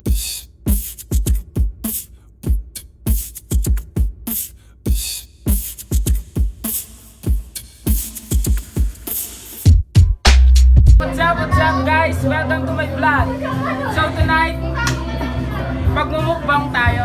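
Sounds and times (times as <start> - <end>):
deep kick drum thuds: 0.0 - 9.0, 9.7 - 11.0
snare and hi-hat hits: 0.0 - 11.0
hip-hop beat: 0.0 - 15.2.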